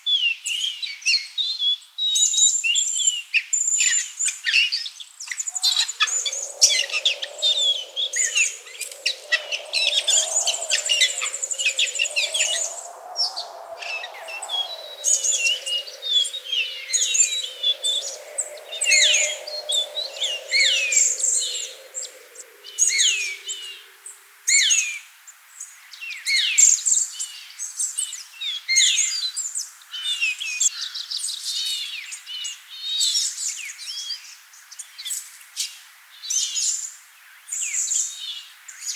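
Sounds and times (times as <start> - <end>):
birds chirping and whistling: 5.5 - 23.8
low wavering hum: 5.6 - 23.9.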